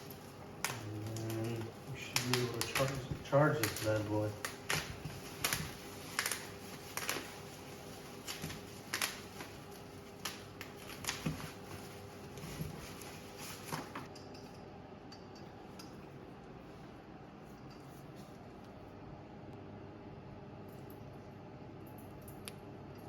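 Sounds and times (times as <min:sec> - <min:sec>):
packaging rustling: 0:00.0 - 0:14.1.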